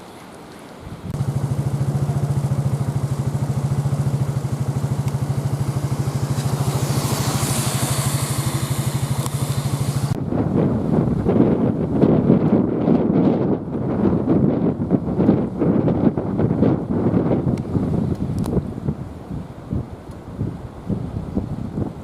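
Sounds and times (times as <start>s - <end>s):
wind and rain hiss: 0.0s - 22.0s
engine idling: 1.2s - 10.2s.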